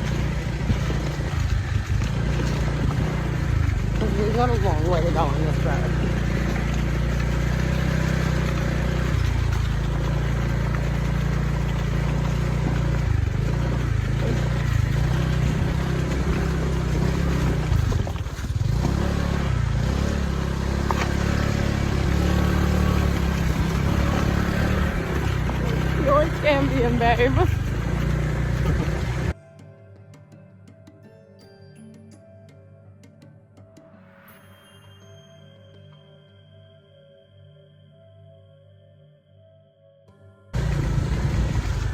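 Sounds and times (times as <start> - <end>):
motorbike engine running: 0.0 - 29.4, 40.6 - 41.9.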